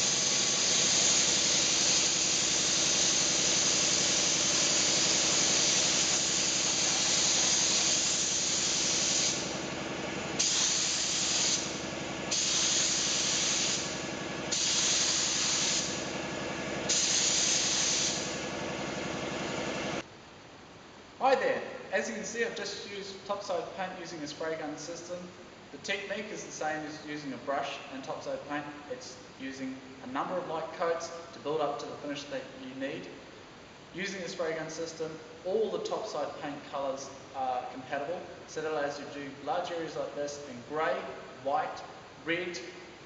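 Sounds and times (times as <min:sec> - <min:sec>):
paint spray gun hissing: 0:00.0 - 0:18.7.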